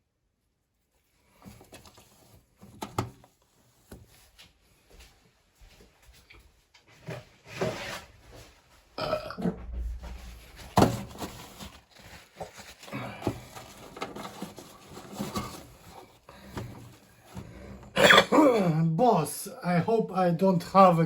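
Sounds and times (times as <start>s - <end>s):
person burping: 9.0s - 9.6s, 18.0s - 18.8s.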